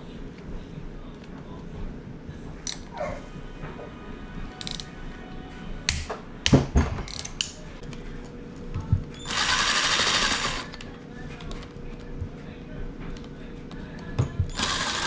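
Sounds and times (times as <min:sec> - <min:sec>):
cordless power driver spinning: 0:09.0 - 0:10.9, 0:14.4 - 0:15.0.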